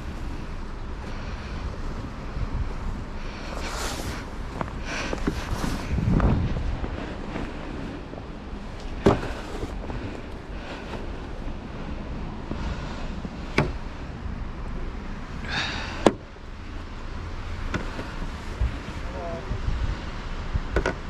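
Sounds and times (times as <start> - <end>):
steady low rumble: 0.0 - 21.0.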